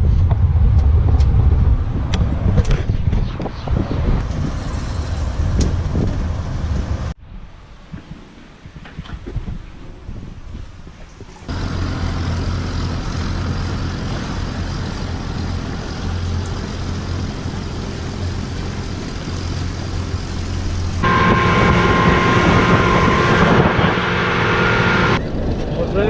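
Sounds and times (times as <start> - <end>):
louder engine whining: 11.5 - 25.2
engine humming: 11.5 - 25.5.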